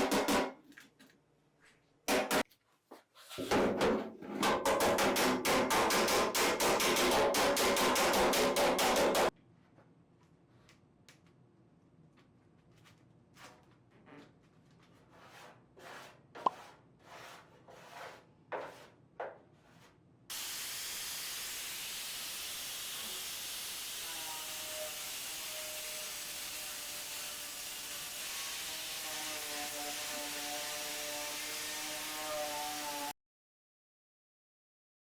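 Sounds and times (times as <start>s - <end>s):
steady hiss: 20.3s - 24.1s.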